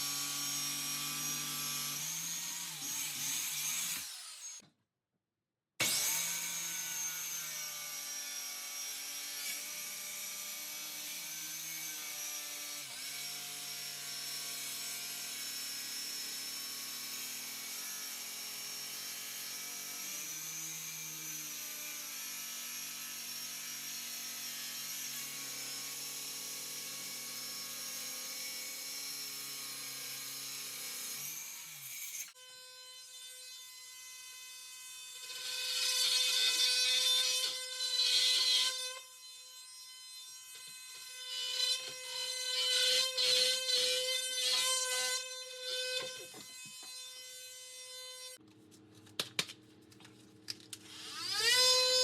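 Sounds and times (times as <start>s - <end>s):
power saw cutting: 0.0s - 4.6s, 5.8s - 9.8s, 50.9s - 52.0s.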